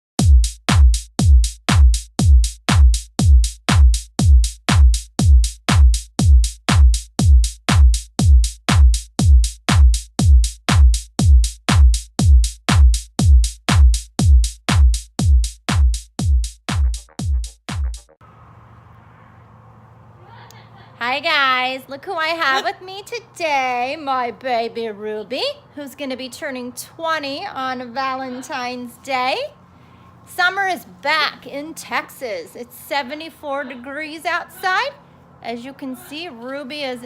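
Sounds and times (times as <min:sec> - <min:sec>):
electronic kick drum beat: 0:00.2 - 0:18.2.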